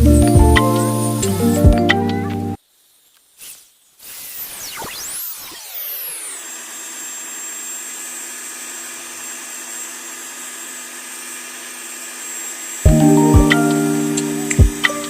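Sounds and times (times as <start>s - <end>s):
power tool motor whining: 3.2s - 12.9s, 13.6s - 14.8s.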